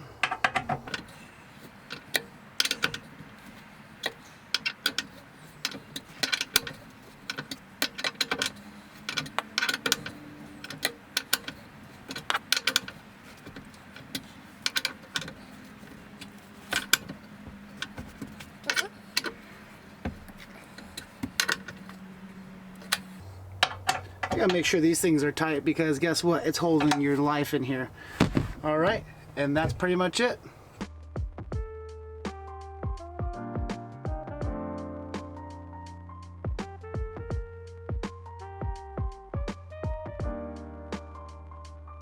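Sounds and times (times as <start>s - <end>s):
socket wrench clicking on bolts: 0.2s - 24.7s, 26.8s - 27.1s.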